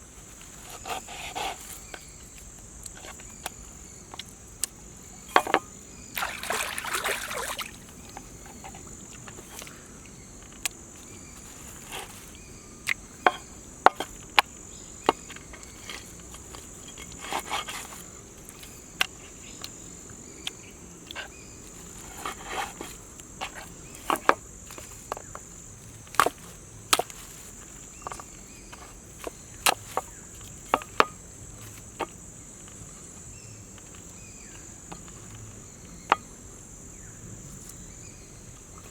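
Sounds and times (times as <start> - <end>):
insects trilling: 0.0 - 38.9.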